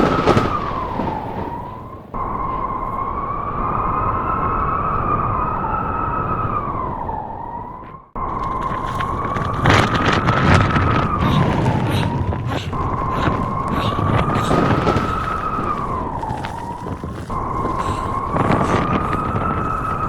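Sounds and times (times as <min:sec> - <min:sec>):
wind rushing: 0:00.0 - 0:20.0
crackling clicks: 0:08.2 - 0:20.0
wolves howling: 0:08.3 - 0:20.0.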